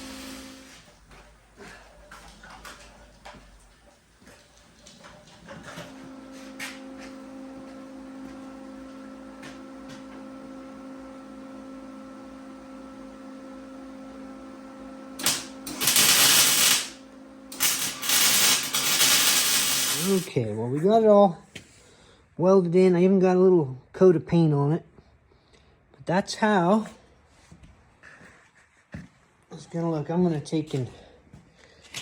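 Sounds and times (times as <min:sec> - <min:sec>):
welding crackling: 0:00.0 - 0:00.7, 0:15.2 - 0:20.3
electrical hum: 0:00.0 - 0:20.3.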